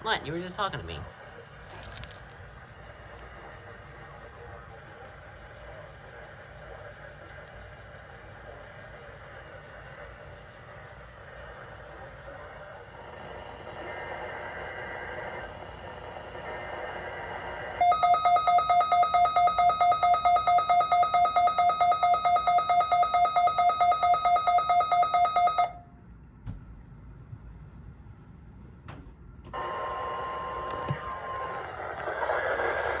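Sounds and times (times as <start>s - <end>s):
two-tone alarm beeping: 17.8s - 25.8s.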